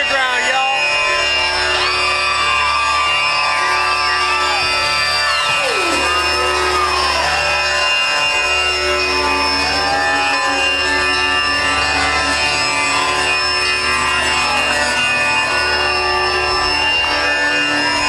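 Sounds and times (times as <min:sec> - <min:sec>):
droning music with sliding melody: 0:00.0 - 0:18.0
sustained deep bass: 0:00.0 - 0:18.0.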